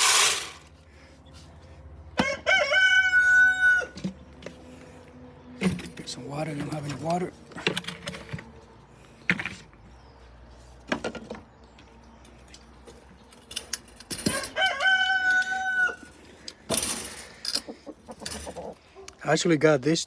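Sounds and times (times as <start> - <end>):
rooster crowing: 2.2 - 4.0, 14.3 - 16.1.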